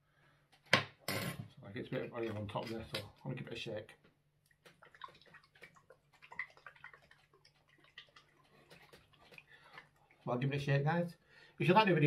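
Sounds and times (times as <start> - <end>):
liquid sloshing in bottle: 4.5 - 10.6.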